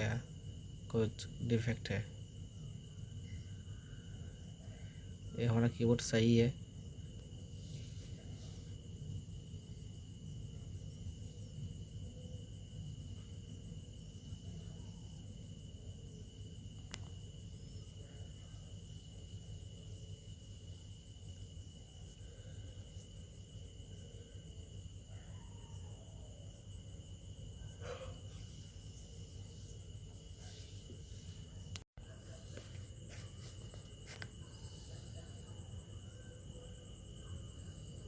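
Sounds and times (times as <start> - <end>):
soft handling sound: 30.6 - 35.3.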